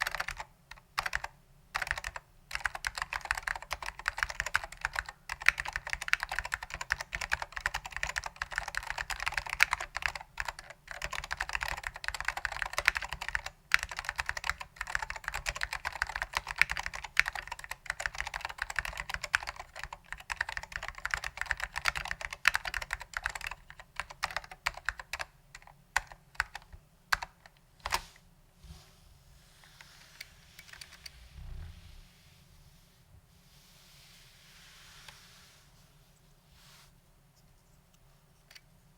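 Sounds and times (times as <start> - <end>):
fast keyboard typing: 0.0 - 28.0.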